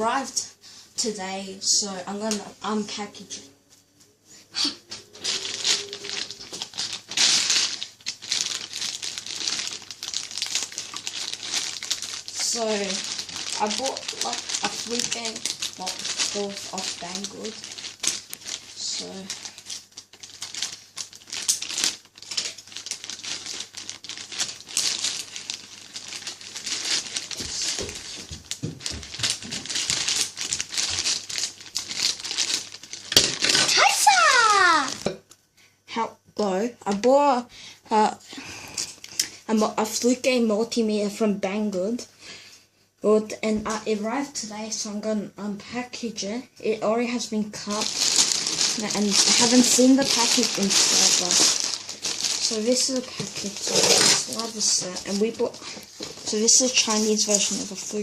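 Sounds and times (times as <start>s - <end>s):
packaging crinkling and rustling: 4.7s - 35.2s, 47.1s - 58.0s.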